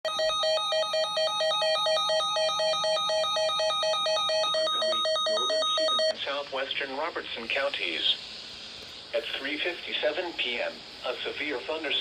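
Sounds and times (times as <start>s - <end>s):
rapid electronic alert beeping: 0.1s - 6.1s.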